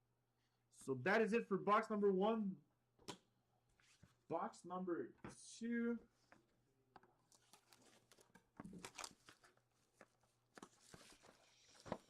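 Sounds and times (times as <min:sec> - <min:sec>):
plastic wrapping crinkling and tearing: 0:07.3 - 0:09.6.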